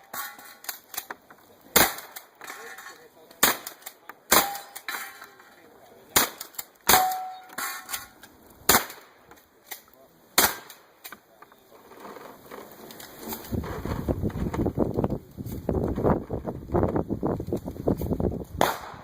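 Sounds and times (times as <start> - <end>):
shotgun firing: 1.8 - 2.2, 3.4 - 4.9, 6.1 - 7.4, 8.7 - 9.2, 10.4 - 10.8, 18.6 - 19.0
metallic ring: 7.0 - 8.2.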